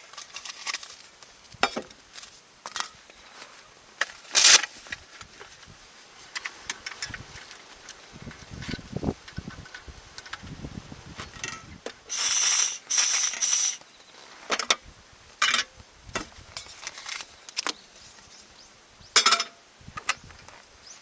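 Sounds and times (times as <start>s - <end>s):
rustling handling noises: 0.0s - 10.4s, 16.2s - 18.3s.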